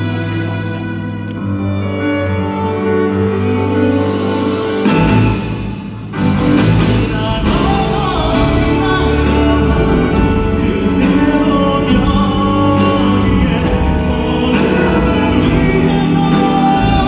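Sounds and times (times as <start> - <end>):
live concert music with singing: 0.0 - 17.0.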